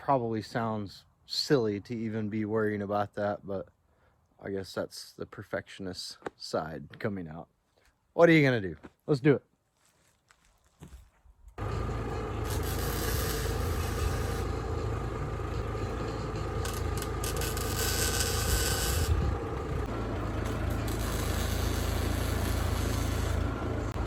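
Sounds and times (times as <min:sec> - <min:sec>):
steady running hum: 0:11.6 - 0:24.0
welding crackle and hiss: 0:12.4 - 0:14.6, 0:16.6 - 0:19.2, 0:20.8 - 0:23.5.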